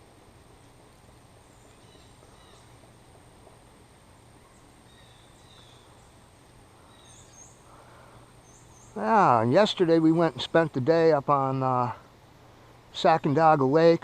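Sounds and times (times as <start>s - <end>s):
steady low hum: 0.0s - 14.0s
faint bird chirps: 1.4s - 2.9s, 4.1s - 9.0s.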